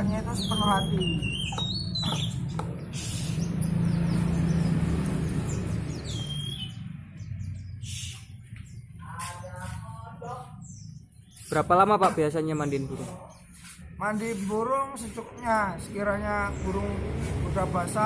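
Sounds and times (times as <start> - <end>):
small bird chirping: 0.0 - 17.3.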